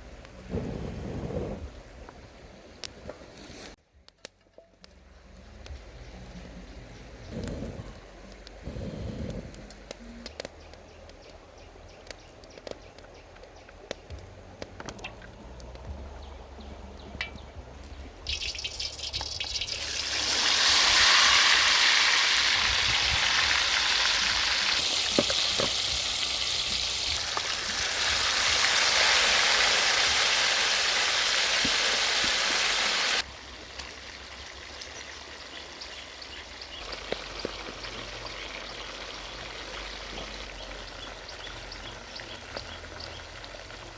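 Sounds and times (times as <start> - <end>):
pork sizzling in hot oil: 17.3 - 43.9.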